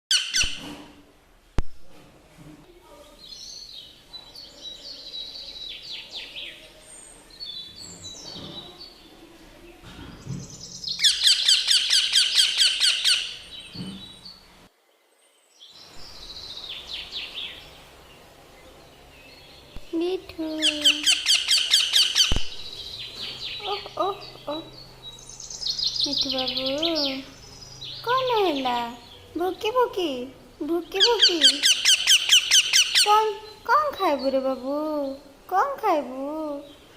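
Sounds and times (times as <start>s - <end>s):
parrot chirping: 0.1s - 0.6s, 10.6s - 14.3s, 20.5s - 29.4s, 30.8s - 34.6s.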